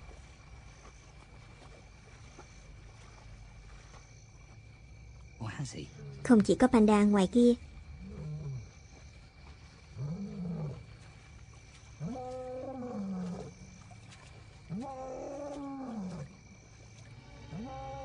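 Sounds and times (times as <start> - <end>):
lion roaring: 10.0 - 10.9, 12.0 - 13.6, 14.7 - 16.3.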